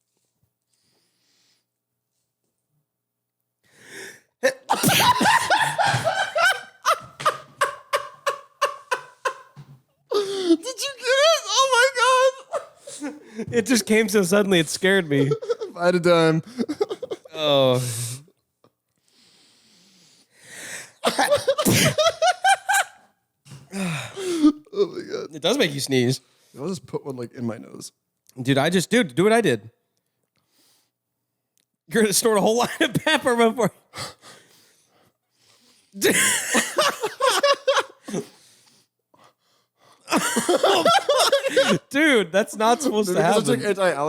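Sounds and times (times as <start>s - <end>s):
short breath in: 3.7s - 4.3s
person laughing: 4.4s - 13.7s, 15.0s - 15.8s, 16.4s - 17.6s, 21.0s - 23.0s, 36.0s - 38.3s, 40.1s - 41.9s, 42.6s - 43.7s
loud sneeze: 4.5s - 6.0s, 21.1s - 22.2s
pulsing laughter: 4.7s - 9.6s.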